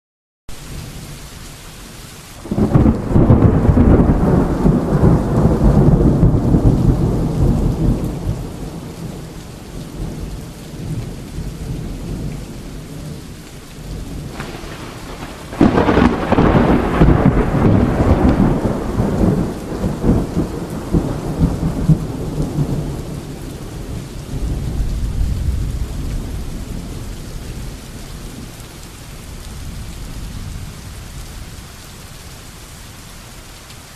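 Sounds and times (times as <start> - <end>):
steady rain: 0.5 - 33.9
rolling thunder: 2.4 - 13.2, 13.9 - 28.5.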